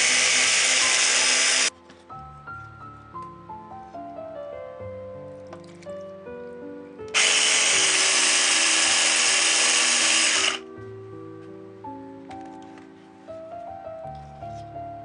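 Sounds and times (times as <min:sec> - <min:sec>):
electric kitchen appliance running: 0:00.0 - 0:01.7, 0:07.2 - 0:10.6
background music with piano notes: 0:00.0 - 0:15.0.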